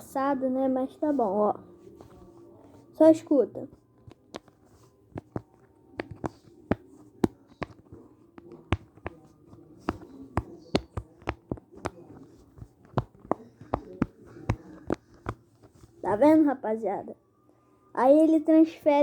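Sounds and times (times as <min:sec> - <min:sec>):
fidget toy bubbles popping: 0:12.6 - 0:15.4.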